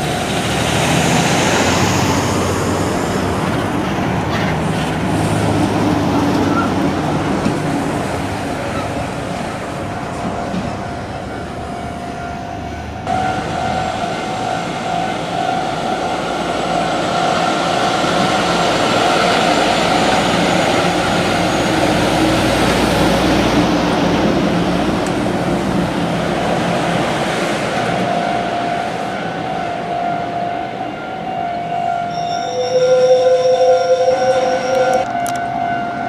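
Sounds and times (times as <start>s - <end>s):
truck engine and tyres passing: 0.0s - 30.8s
level-crossing alarm ringing: 9.8s - 22.2s, 28.0s - 36.0s.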